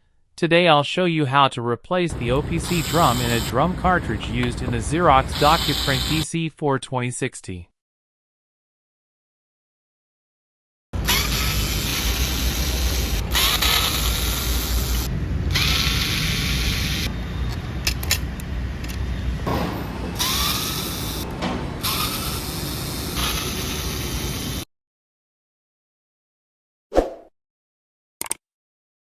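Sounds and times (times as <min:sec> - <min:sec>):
electric screwdriver whirring: 0:02.1 - 0:06.2, 0:11.0 - 0:19.0, 0:20.1 - 0:24.6
sharp clicks: 0:02.1 - 0:06.2.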